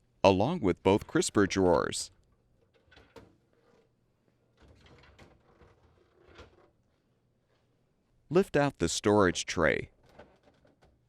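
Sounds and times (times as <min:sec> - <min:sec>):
plastic drawers sliding: 0:04.6 - 0:06.8.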